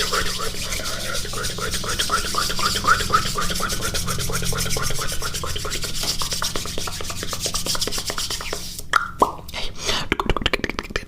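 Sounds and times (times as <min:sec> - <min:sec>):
wet mouth clicks: 0:08.2 - 0:11.0.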